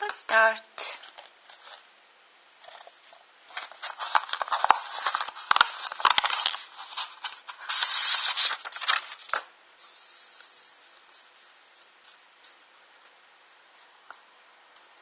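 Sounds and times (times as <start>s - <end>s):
packaging crinkling: 2.6s - 9.5s.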